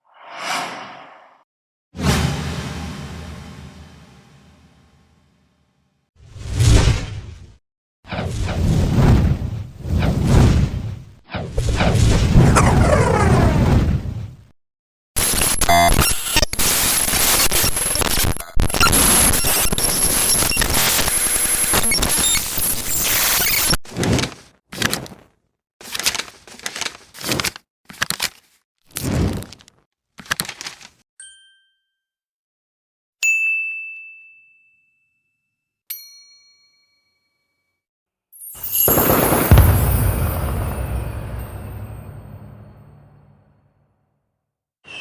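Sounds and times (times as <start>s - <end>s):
dense noisy editing sound effect: 15.2s - 23.8s, 38.9s - 43.3s
deep musical hit: 38.9s - 43.4s.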